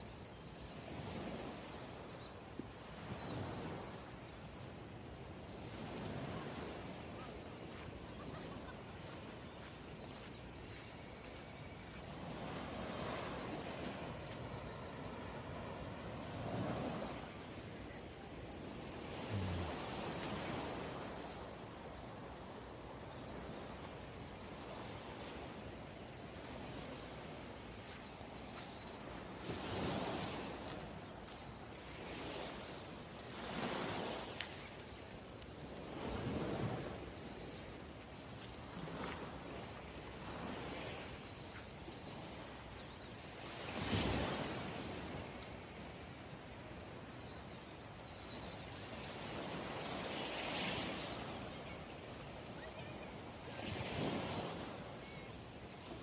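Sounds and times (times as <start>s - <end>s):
surf washing: 0.8s - 47.9s, 48.6s - 56.0s
sea waves breaking: 5.6s - 21.6s, 24.8s - 42.7s.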